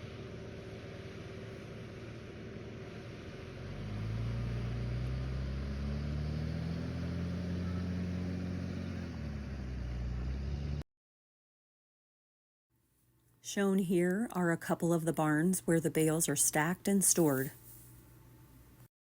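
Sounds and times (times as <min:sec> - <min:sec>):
farm vehicle engine accelerating: 0:00.0 - 0:10.8.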